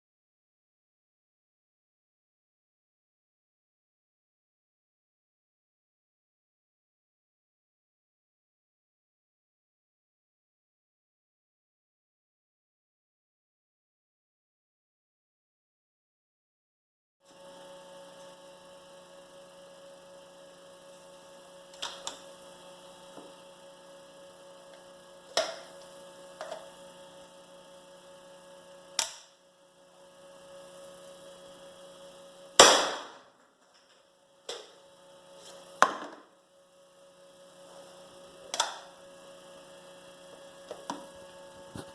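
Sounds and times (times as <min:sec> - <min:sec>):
electrical hum: 0:17.3 - 0:41.9.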